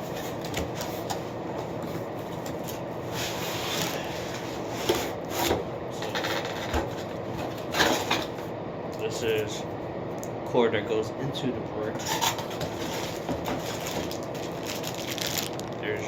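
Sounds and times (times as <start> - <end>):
cardboard packaging rustling: 12.0 - 15.8.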